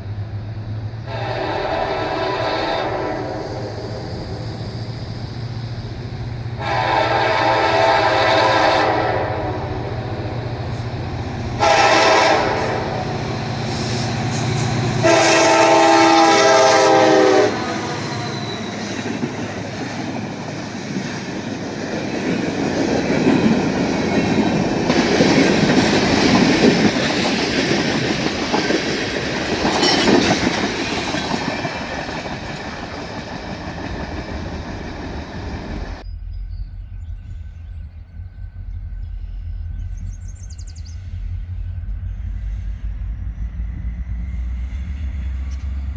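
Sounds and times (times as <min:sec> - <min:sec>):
train rumbling on rails: 0:00.0 - 0:45.9
locomotive horn blasts: 0:01.1 - 0:03.9, 0:06.6 - 0:10.1, 0:11.6 - 0:13.2, 0:15.0 - 0:18.8
low rumble: 0:35.7 - 0:45.9.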